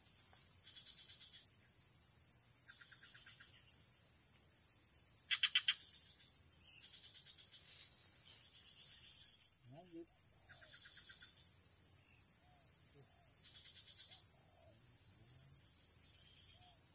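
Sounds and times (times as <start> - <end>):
high insect drone: 0.0 - 16.9
frogs calling in pulsed notes: 5.3 - 7.4.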